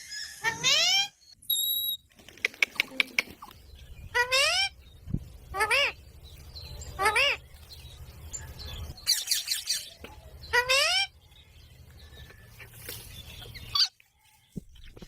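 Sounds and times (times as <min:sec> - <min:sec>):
parrot screeching: 0:00.0 - 0:01.2.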